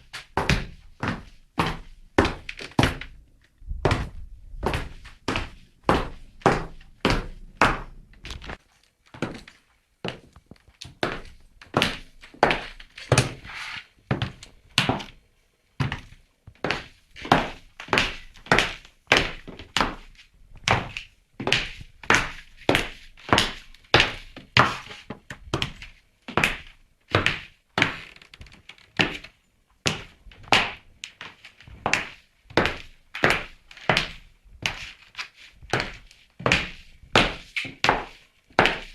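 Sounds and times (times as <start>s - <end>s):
high-heeled shoes walking: 3.8s - 13.5s, 29.0s - 38.9s.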